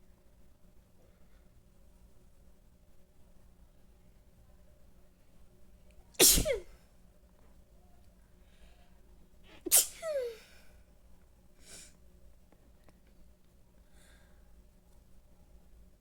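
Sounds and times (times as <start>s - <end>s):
person sneezing: 6.2s - 6.7s, 9.6s - 10.5s.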